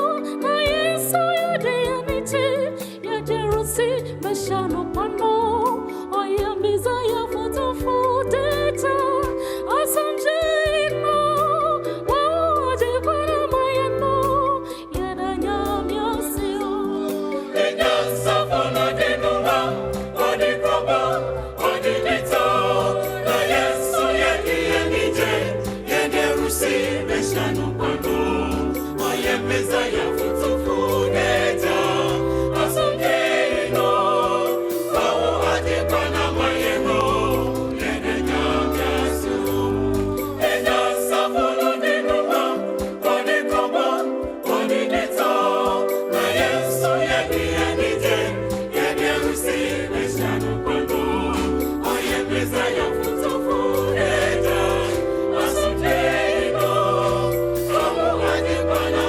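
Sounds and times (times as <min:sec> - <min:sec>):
choir singing in harmony: 0:00.0 - 0:59.0
steady percussive beat: 0:17.5 - 0:59.0.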